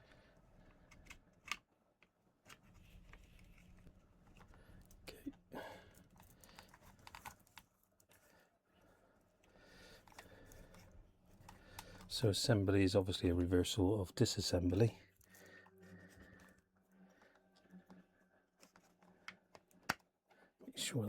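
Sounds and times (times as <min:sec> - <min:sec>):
plastic parts clicking and rustling: 0:00.6 - 0:08.3, 0:10.0 - 0:12.2.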